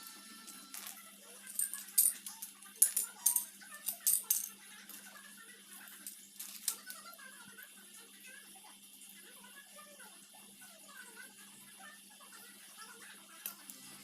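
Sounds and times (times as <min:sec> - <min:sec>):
small hard objects clicking and rattling: 0:00.6 - 0:05.0, 0:06.0 - 0:07.0.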